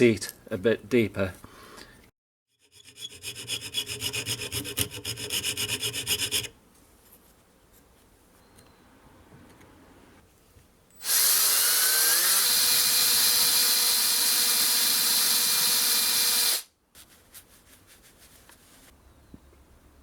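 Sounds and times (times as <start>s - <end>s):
power tool motor whine: 11.0s - 16.6s.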